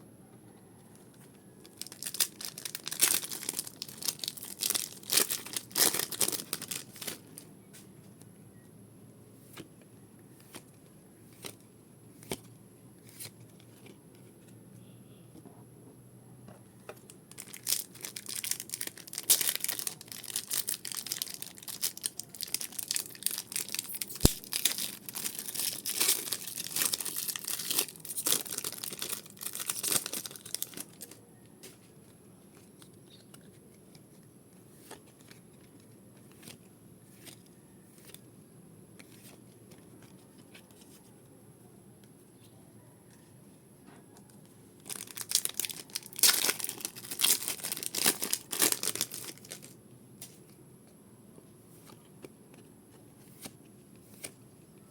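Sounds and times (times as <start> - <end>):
card pack wrappers tearing: 1.7 - 7.4, 17.3 - 31.2, 44.8 - 49.8.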